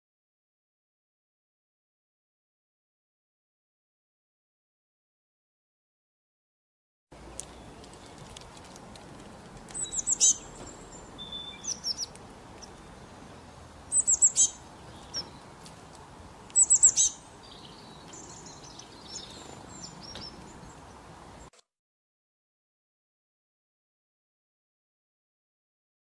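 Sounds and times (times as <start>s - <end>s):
soft bird chirps: 7.2s - 8.8s, 9.6s - 21.5s
songbird singing high notes: 9.7s - 13.0s, 13.9s - 15.6s, 16.5s - 20.9s.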